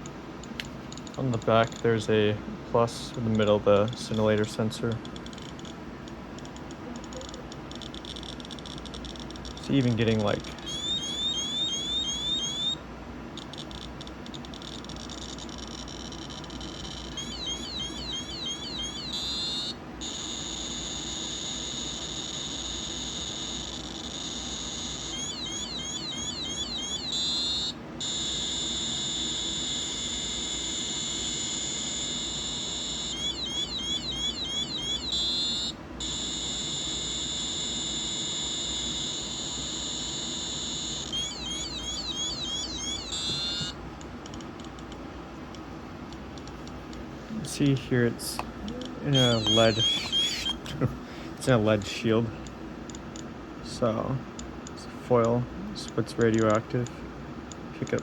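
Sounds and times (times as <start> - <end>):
detector fast chirping clicks: 0.0 - 2.0, 3.0 - 47.0, 47.6 - 50.7, 54.4 - 56.9
high-pitched alarm tone: 8.0 - 12.8, 14.6 - 43.8, 49.0 - 50.6.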